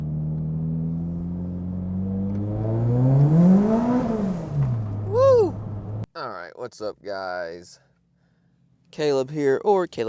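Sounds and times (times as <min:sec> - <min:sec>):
car engine running and revving: 0:00.0 - 0:06.1.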